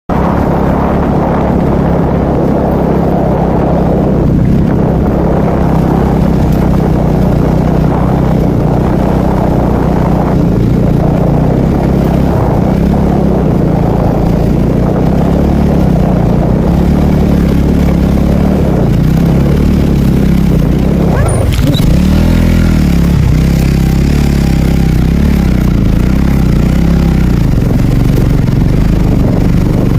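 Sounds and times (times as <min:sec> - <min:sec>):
road and wind noise: 0:00.1 - 0:29.9
vehicle engine droning: 0:00.1 - 0:29.9.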